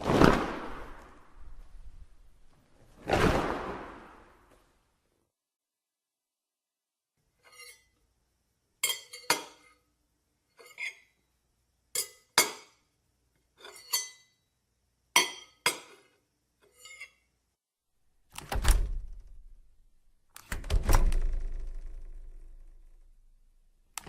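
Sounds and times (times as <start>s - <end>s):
glassware clinking: 8.8s - 9.8s, 12.0s - 12.8s, 13.6s - 14.4s, 15.2s - 16.1s.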